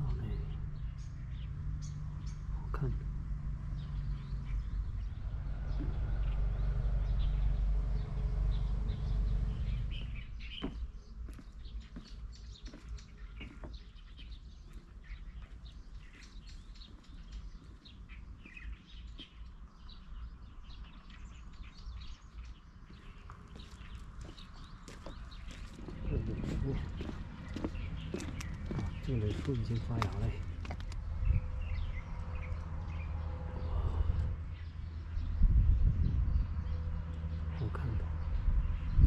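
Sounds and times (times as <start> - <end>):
low rumble: 0.0 - 11.0, 25.5 - 39.0
small birds chirping: 0.0 - 39.0.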